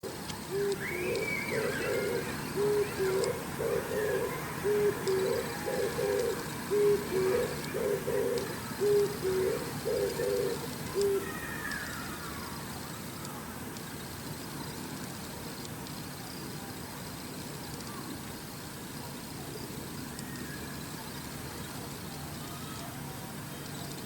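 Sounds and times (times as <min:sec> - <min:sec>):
dove cooing: 0:00.5 - 0:11.4.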